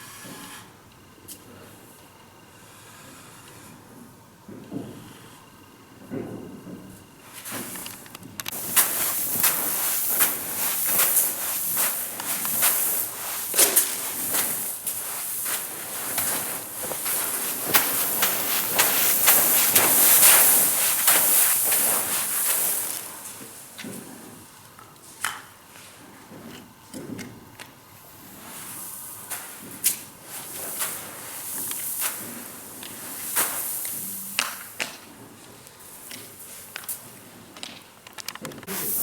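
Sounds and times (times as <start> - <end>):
dry grain hissing and crunching: 7.3 - 24.4, 28.1 - 37.0, 38.7 - 39.0.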